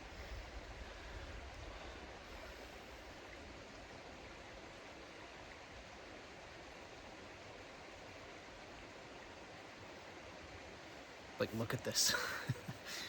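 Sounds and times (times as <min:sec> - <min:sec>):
faint river rushing: 0:00.0 - 0:13.0.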